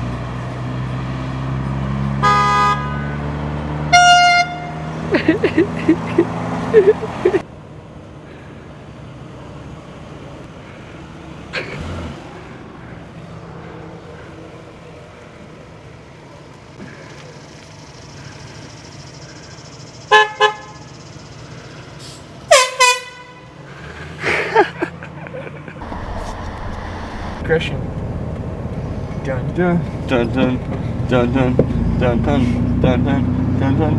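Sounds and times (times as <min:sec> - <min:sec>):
air horn blasts: 0:02.2 - 0:03.2, 0:03.9 - 0:05.0, 0:20.1 - 0:20.9, 0:22.5 - 0:23.6.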